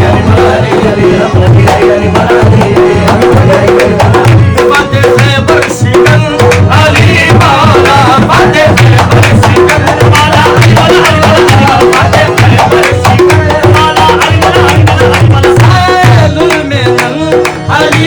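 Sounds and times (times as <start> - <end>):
harmonium melody: 0.0 - 18.0
tabla playing rhythm: 0.0 - 18.0.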